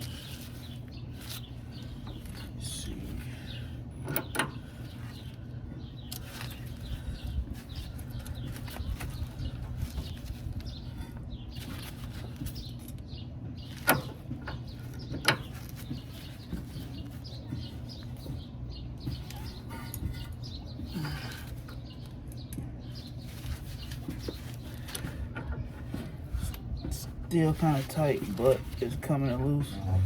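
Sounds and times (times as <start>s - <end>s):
birds chirping: 0.0s - 30.0s
low hum: 29.4s - 30.0s.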